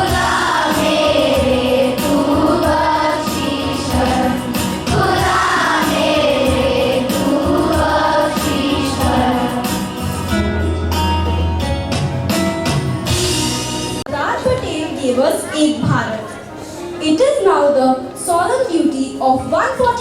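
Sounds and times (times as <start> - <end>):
group of voices singing: 0.0 - 10.3
instrumental backing with beat: 0.0 - 14.1.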